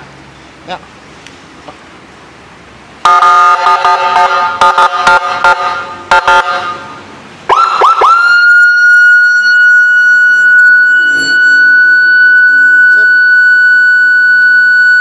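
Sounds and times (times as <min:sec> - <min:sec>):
electronic siren through speaker: 0:07.5 - 0:15.0.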